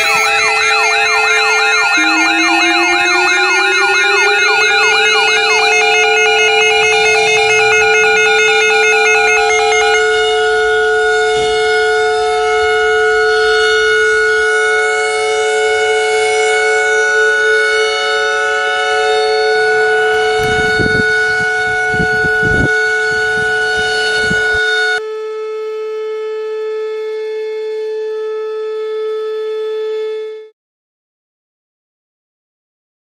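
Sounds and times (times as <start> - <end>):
siren-like alert tone: 0.0 - 25.0.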